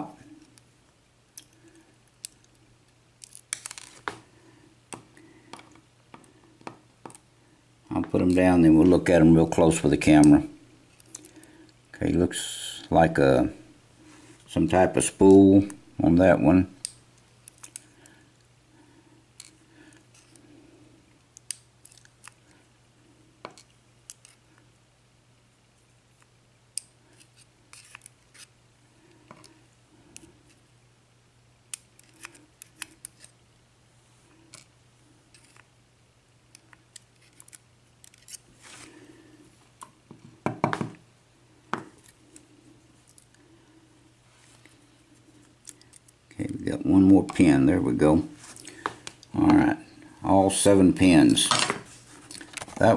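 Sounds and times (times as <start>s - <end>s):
knocks: 40.4s - 41.0s.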